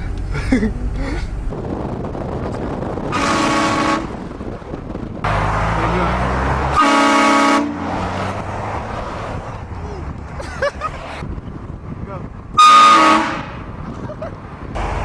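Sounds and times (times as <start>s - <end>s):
loud low rumble: 0.6s - 6.8s
train horn blasts: 3.1s - 4.2s, 6.7s - 7.8s, 12.6s - 13.7s.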